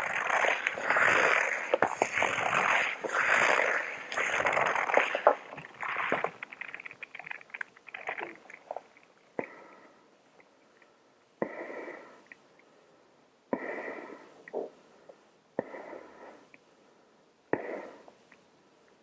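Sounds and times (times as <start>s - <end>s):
plastic fabric crinkling: 0.0s - 8.8s.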